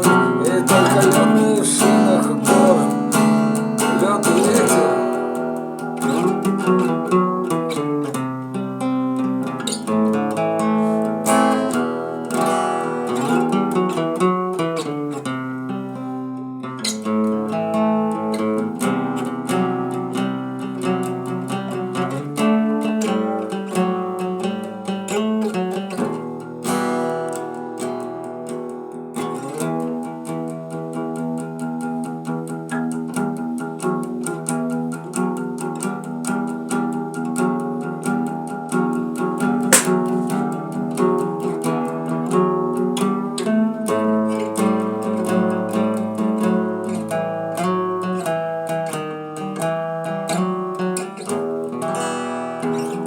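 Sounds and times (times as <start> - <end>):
acoustic guitar strumming: 0.0 - 53.0
steady beat of sharp strokes: 39.7 - 40.1.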